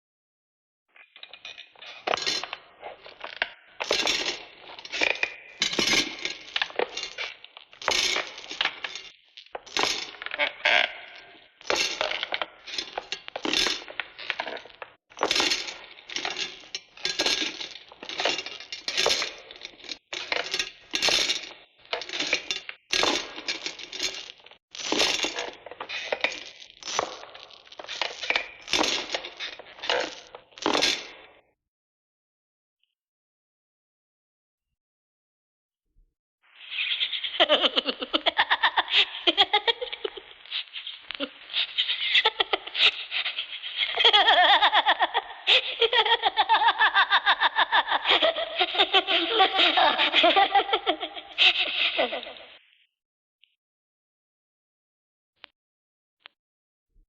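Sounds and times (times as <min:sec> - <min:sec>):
clinking and rattling bursts: 0:01.2 - 0:31.3.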